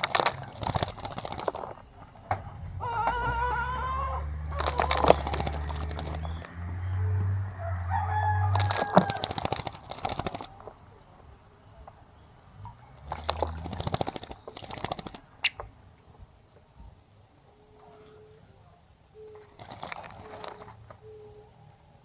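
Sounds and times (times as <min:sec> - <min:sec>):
birds splashing and fluttering: 0:00.0 - 0:15.9, 0:19.2 - 0:21.1
rooster crowing: 0:02.4 - 0:10.5.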